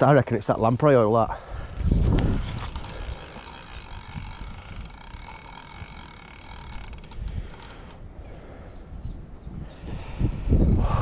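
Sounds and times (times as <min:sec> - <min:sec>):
fishing reel clicking: 0:00.0 - 0:08.0.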